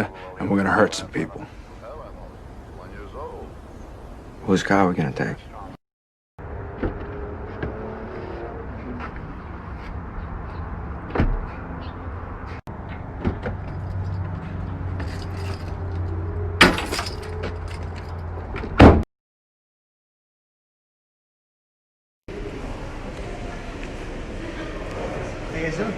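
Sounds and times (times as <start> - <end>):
car engine and road rumble: 6.4 - 19.0
sharp knocks and clunks: 11.0 - 11.6, 12.8 - 14.3.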